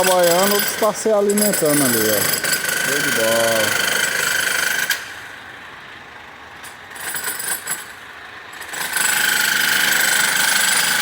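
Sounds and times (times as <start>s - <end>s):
jackhammer hammering: 0.0s - 5.5s, 6.6s - 11.0s.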